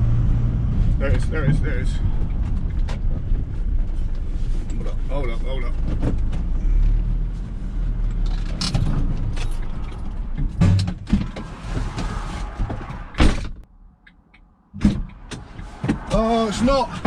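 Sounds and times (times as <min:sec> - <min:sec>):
vehicle engine running: 0:00.0 - 0:13.1
car door thudding: 0:10.4 - 0:13.6.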